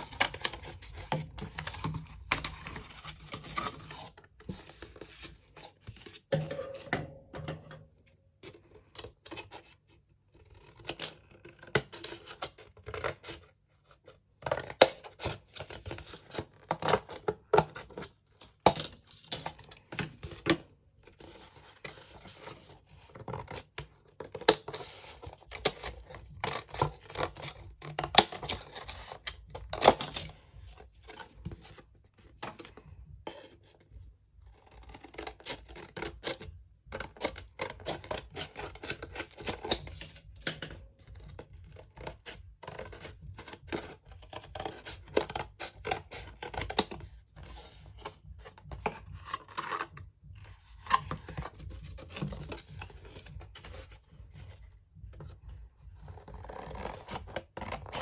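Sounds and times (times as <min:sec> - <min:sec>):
cardboard and paper being handled: 0:00.0 - 0:06.9, 0:35.4 - 0:58.0.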